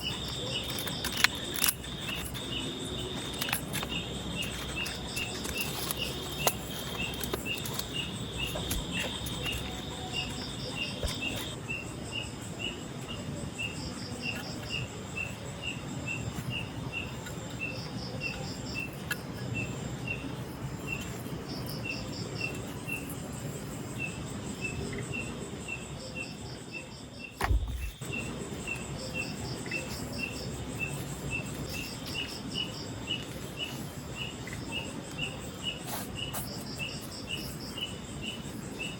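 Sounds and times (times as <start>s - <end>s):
insects chirping: 0.0s - 38.9s
low thump: 27.4s - 28.0s.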